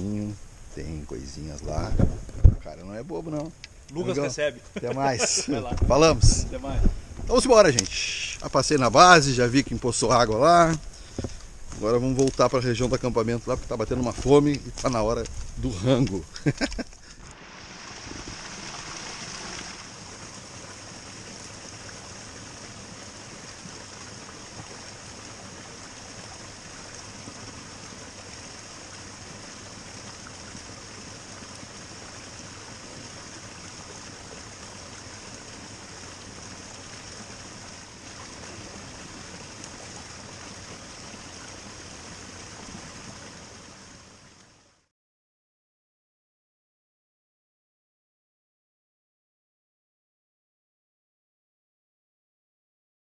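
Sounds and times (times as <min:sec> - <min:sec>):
rushing hiss: 0:16.2 - 0:25.4.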